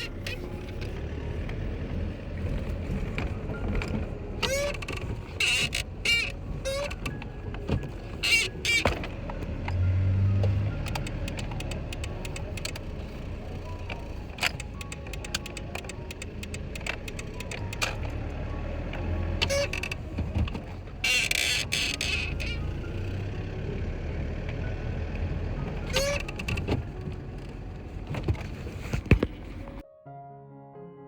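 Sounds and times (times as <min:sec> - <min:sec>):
short squeaks: 0:00.0 - 0:29.8
truck engine idling: 0:00.0 - 0:29.8
clicks: 0:02.6 - 0:22.9.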